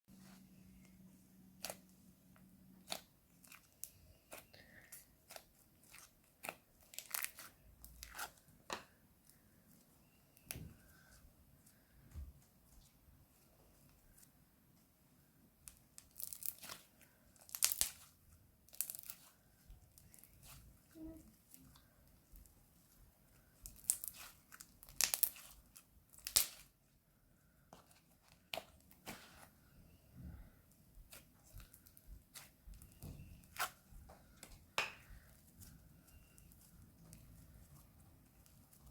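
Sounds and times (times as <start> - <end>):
crunchy slime crackling: 2.7 - 8.4, 15.6 - 21.7, 23.3 - 26.8.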